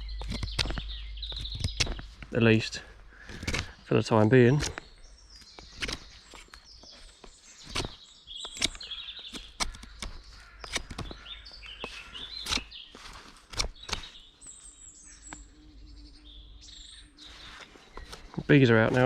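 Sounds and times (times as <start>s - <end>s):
small birds chirping: 0.0s - 19.0s
sharp knocks and clicks: 0.1s - 2.3s, 8.6s - 11.2s.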